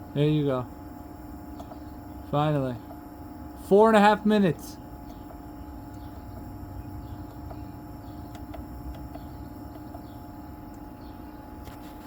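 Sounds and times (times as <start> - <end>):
inverter humming: 0.0 - 12.0.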